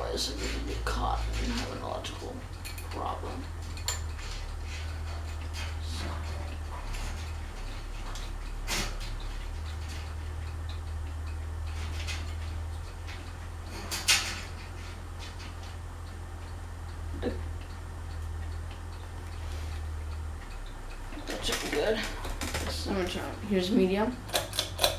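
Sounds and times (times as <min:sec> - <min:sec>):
steady low hum: 0:00.0 - 0:24.9
clicks handling electrical wiring: 0:20.4 - 0:23.0, 0:24.2 - 0:24.9.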